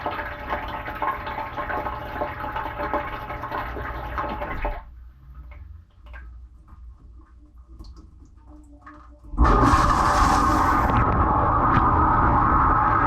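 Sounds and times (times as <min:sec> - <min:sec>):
water drips and clicks: 0:01.7 - 0:09.4
dishwasher hum: 0:09.3 - 0:13.0
dishwasher water spraying: 0:09.4 - 0:11.0.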